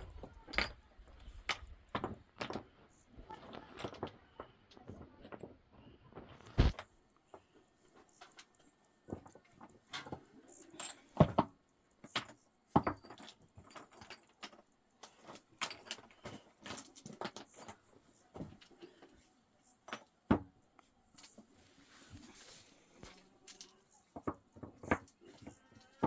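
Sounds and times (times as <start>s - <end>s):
hard objects clicking and knocking: 0.0s - 5.5s, 8.0s - 19.2s, 23.0s - 26.0s.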